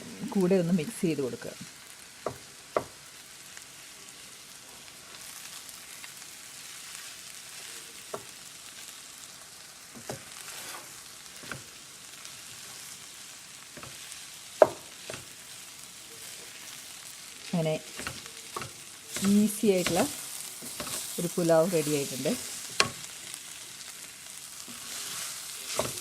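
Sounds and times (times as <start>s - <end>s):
low steady sizzle: 0.0s - 26.0s
spoon stirring rice in pan: 4.8s - 26.0s
spoon knocking against pan: 14.6s - 15.2s.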